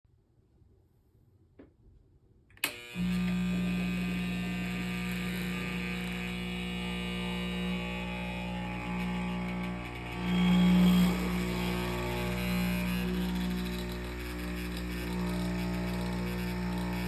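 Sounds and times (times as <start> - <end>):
loud electric buzz: 2.6 - 17.0
espresso machine clicking on: 7.4 - 17.0.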